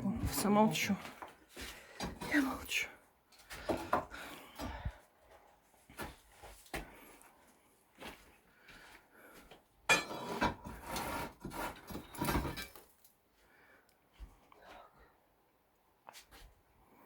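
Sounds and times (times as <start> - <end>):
concrete slab clattering and scraping: 9.9 - 13.0.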